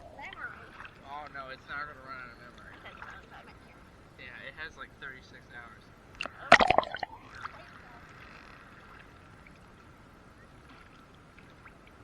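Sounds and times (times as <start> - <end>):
faint sea wash: 0.0 - 12.0
water splashing on microphone: 6.2 - 7.8.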